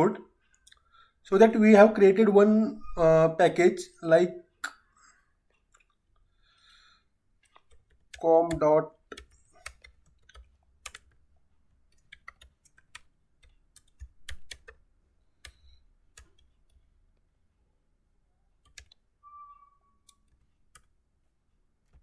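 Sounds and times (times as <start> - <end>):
computer keyboard typing: 7.4 - 16.9, 18.6 - 19.1, 20.0 - 21.0.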